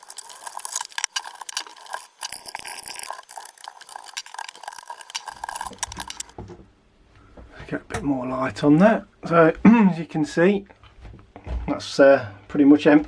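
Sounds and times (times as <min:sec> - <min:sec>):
metal parts clinking and rattling: 0:00.0 - 0:06.3.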